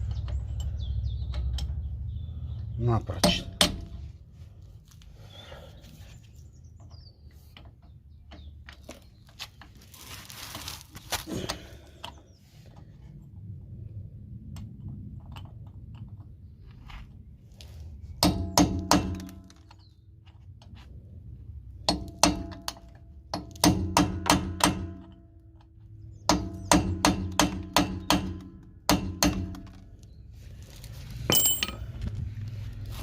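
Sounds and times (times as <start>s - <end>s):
hammer striking metal chisel: 31.3s - 31.9s.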